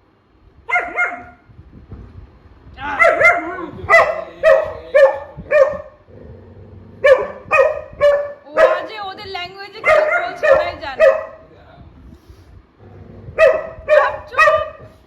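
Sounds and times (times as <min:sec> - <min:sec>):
dogs barking and yipping: 0:00.7 - 0:01.4, 0:03.0 - 0:06.0, 0:07.0 - 0:09.2, 0:09.8 - 0:11.5, 0:13.4 - 0:14.9.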